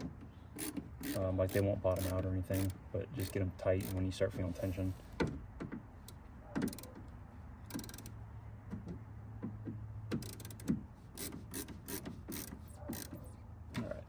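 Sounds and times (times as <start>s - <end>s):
screwdriver clicking and scraping: 0.6s - 4.7s, 10.2s - 13.3s.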